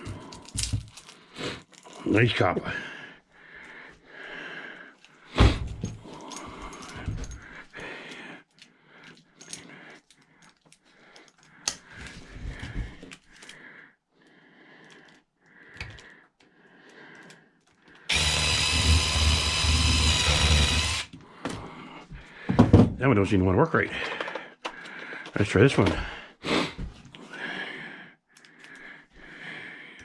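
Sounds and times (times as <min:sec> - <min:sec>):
power drill running: 0:18.1 - 0:21.2.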